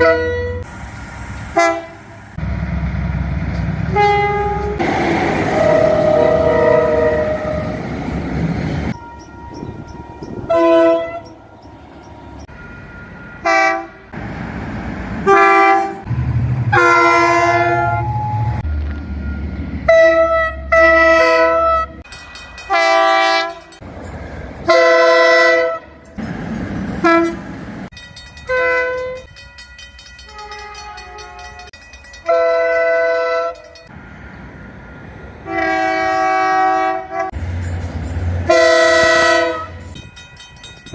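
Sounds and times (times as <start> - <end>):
train horn blasts: 0.0 - 0.7, 1.5 - 2.2, 3.8 - 7.9, 8.9 - 11.4, 13.4 - 14.2, 15.2 - 16.1, 16.7 - 18.6, 19.8 - 22.0, 22.7 - 23.8, 24.6 - 26.0, 27.0 - 27.5, 28.5 - 29.3, 30.3 - 33.7, 35.4 - 37.4, 38.4 - 40.0.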